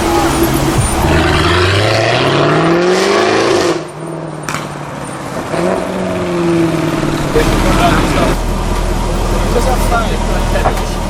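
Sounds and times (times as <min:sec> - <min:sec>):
car engine accelerating: 0:00.0 - 0:11.0.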